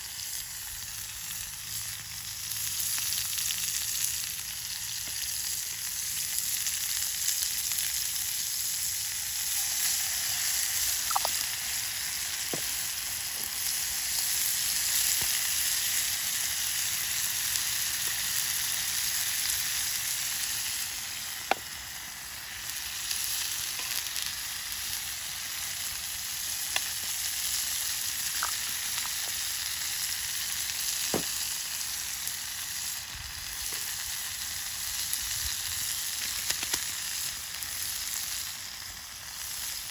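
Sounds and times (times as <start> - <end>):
food sizzling in a pan: 0.0 - 39.9
sharp pops: 11.1 - 11.4, 12.4 - 12.8, 21.4 - 21.8, 28.3 - 29.4, 31.0 - 31.5.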